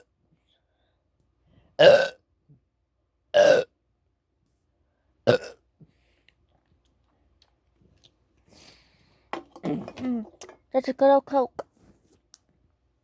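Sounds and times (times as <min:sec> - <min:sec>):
man burping: 0:01.8 - 0:02.2, 0:03.4 - 0:03.7, 0:05.3 - 0:05.6.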